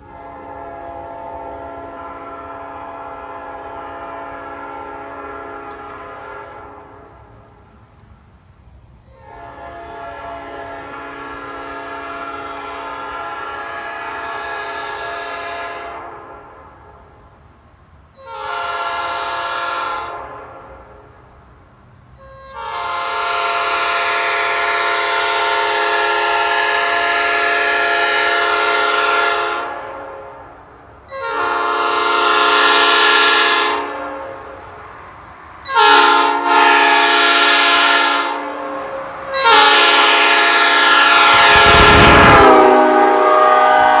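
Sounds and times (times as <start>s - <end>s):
air horn blasts: 0.0s - 7.2s, 9.2s - 16.9s, 18.2s - 20.8s, 22.4s - 30.2s, 31.1s - 34.7s, 35.7s - 44.0s.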